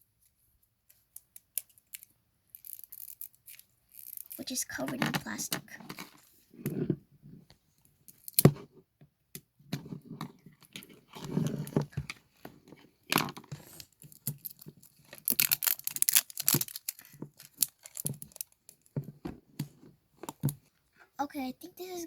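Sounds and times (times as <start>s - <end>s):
plastic wrapping tearing and crinkling: 13.7s - 18.9s.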